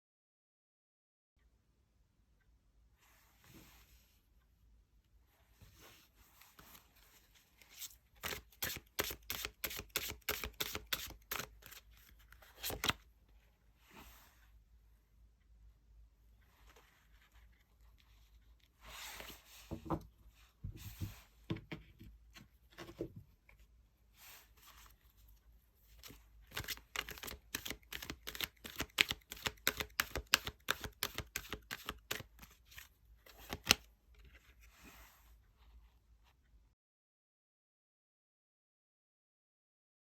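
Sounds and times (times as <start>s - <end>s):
cards rustling: 7.6s - 13.0s, 26.0s - 33.8s
cards snapping: 12.6s - 13.0s, 26.5s - 32.3s, 33.5s - 33.8s.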